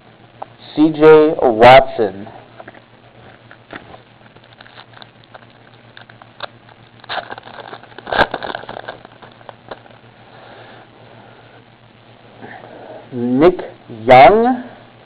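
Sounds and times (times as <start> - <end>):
cards rustling and clicking: 3.7 - 10.0.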